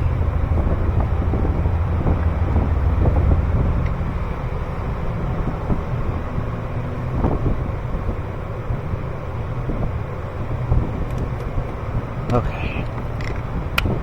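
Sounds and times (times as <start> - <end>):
wind rumble on microphone: 0.0 - 14.0
hands clicking connectors: 12.3 - 14.0.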